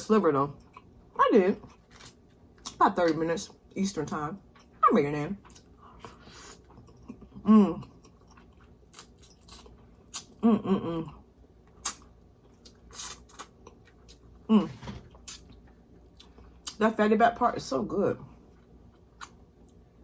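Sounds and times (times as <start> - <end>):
chewing and mouth smacks: 8.0 - 10.4, 18.5 - 19.8.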